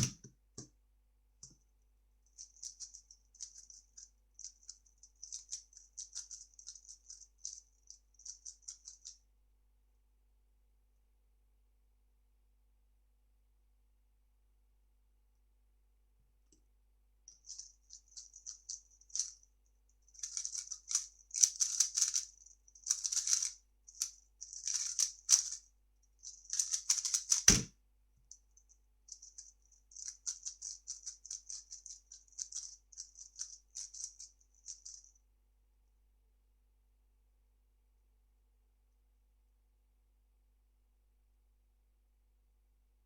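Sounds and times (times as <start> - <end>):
puzzle cube clicking and rattling: 2.3 - 9.2, 17.4 - 19.4, 20.1 - 25.6, 26.2 - 27.7, 29.1 - 35.1.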